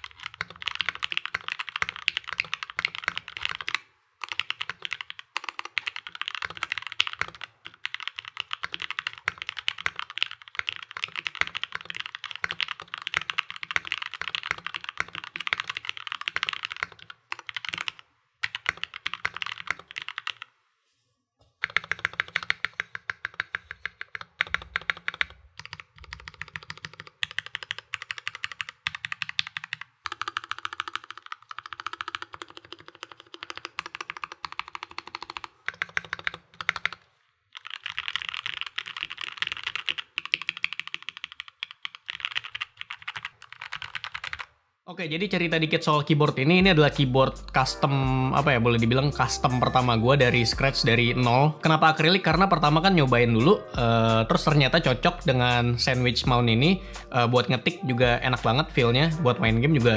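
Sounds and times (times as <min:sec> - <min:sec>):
mechanical keyboard typing: 0:00.0 - 0:20.5, 0:21.6 - 0:37.0, 0:37.6 - 0:44.5.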